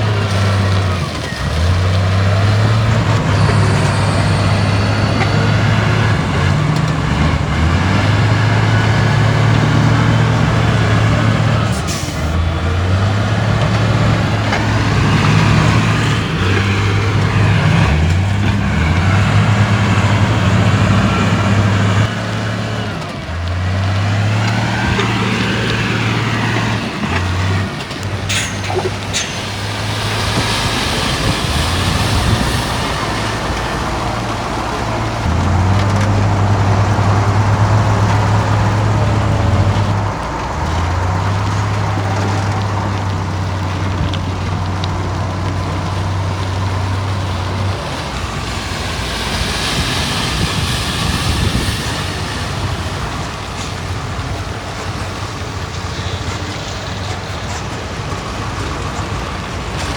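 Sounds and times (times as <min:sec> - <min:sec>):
diesel machinery engine revving: 0:00.0 - 0:59.9
sharp metal clank: 0:28.2 - 0:32.8.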